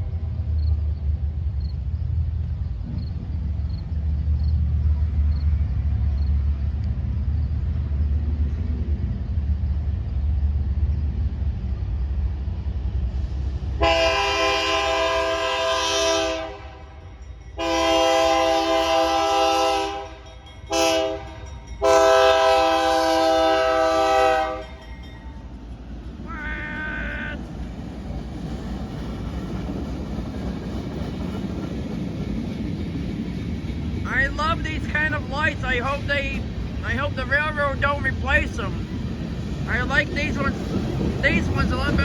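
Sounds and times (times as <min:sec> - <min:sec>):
locomotive rumble: 0:00.0 - 0:42.0
locomotive air horn blasts: 0:13.8 - 0:17.0, 0:17.6 - 0:24.8.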